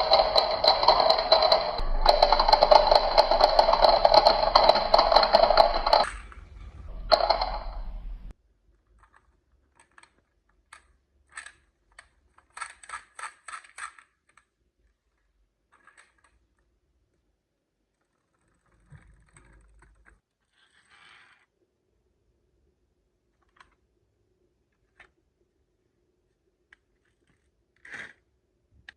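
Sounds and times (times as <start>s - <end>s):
marbles clicking on track: 0.0s - 8.1s
marbles rolling on track: 0.0s - 8.3s.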